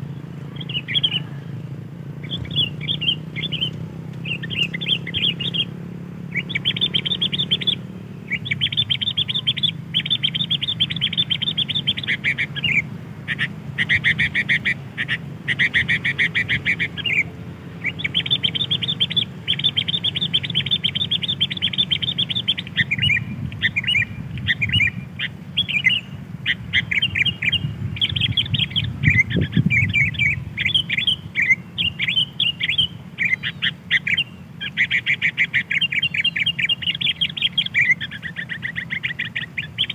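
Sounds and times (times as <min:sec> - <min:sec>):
bulbul chattering chirps: 0:00.0 - 0:39.9.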